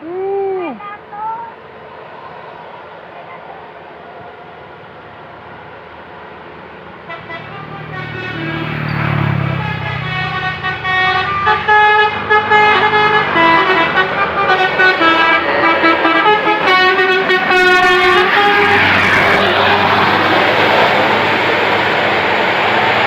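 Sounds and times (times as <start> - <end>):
air horn melody: 7.1 - 20.2.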